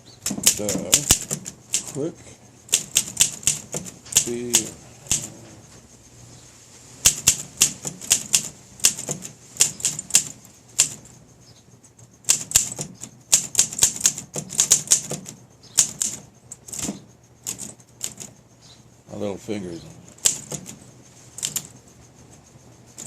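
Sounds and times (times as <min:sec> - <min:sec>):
manual typewriter keystrokes: 0:00.2 - 0:02.0, 0:02.7 - 0:05.4, 0:07.0 - 0:11.1, 0:12.2 - 0:18.4, 0:20.2 - 0:20.8, 0:21.4 - 0:21.7.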